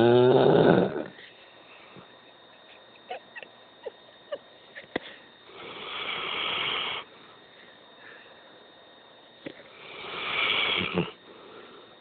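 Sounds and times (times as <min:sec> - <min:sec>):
dog snoring: 0:00.0 - 0:01.2, 0:05.5 - 0:07.1, 0:09.7 - 0:11.8.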